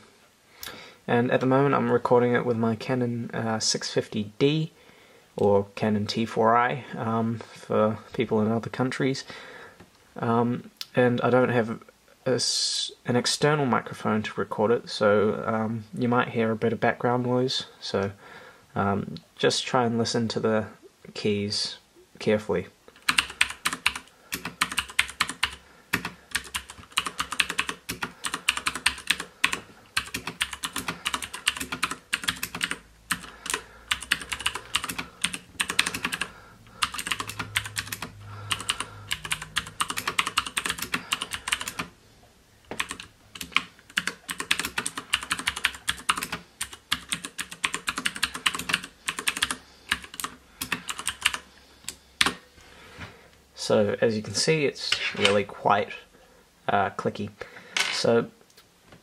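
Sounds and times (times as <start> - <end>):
faint computer hum: 0.0 - 59.0
clicky mechanical keyboard typing: 23.0 - 41.9, 42.8 - 52.4.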